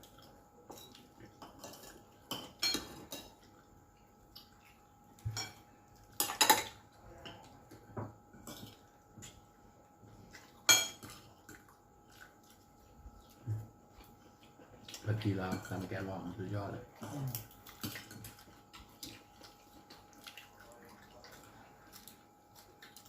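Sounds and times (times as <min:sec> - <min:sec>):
cutlery and dishes clinking: 0:00.6 - 0:03.5, 0:06.2 - 0:08.8, 0:10.7 - 0:11.6, 0:15.4 - 0:16.1, 0:17.0 - 0:18.4.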